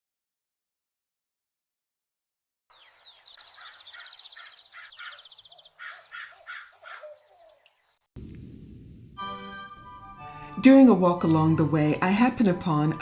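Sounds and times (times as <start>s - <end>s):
harsh repeated bird calls: 2.7s - 8.0s.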